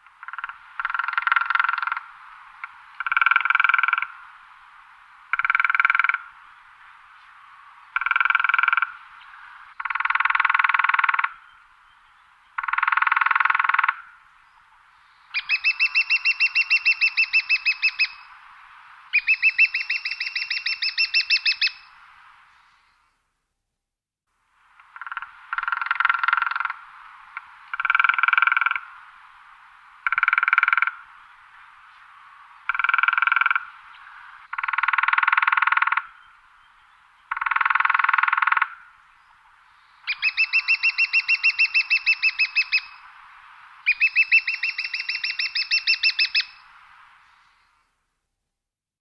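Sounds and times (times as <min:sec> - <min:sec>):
woodpecker drumming on wood: 0:00.2 - 0:04.1, 0:05.3 - 0:06.2, 0:08.0 - 0:08.9, 0:09.8 - 0:11.4, 0:12.6 - 0:14.0, 0:24.8 - 0:28.9, 0:30.0 - 0:31.0, 0:32.7 - 0:33.7, 0:34.5 - 0:36.1, 0:37.3 - 0:38.8.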